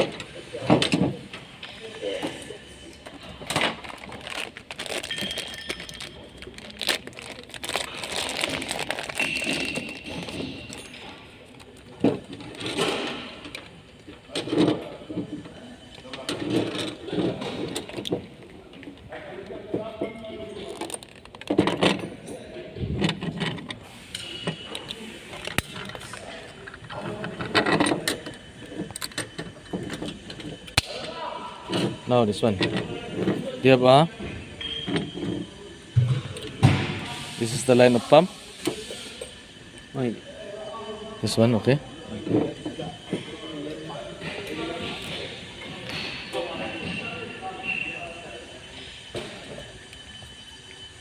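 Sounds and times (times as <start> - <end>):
plastic parts clicking and crinkling: 3.1 - 13.7, 20.6 - 22.0.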